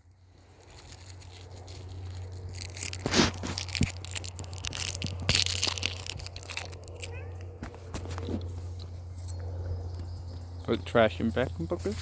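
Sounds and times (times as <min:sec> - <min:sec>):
plastic wrapper crinkling: 0:00.0 - 0:07.3
plastic wrapper tearing: 0:00.5 - 0:07.2.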